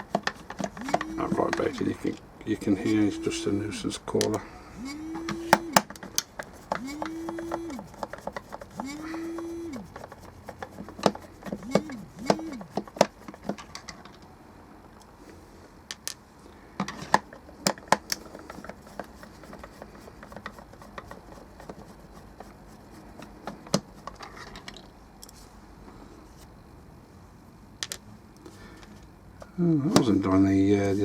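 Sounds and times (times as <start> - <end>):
screwdriver being handled: 0.0 - 2.2, 4.9 - 14.1, 17.7 - 24.2.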